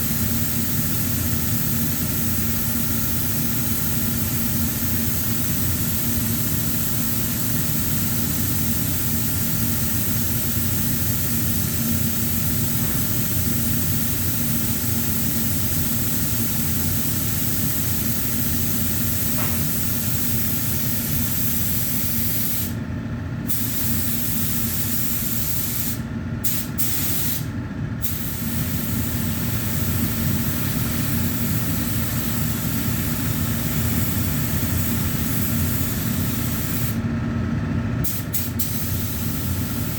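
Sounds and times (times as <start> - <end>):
spray gun hissing: 0.0 - 22.8, 23.5 - 37.0, 38.0 - 39.9.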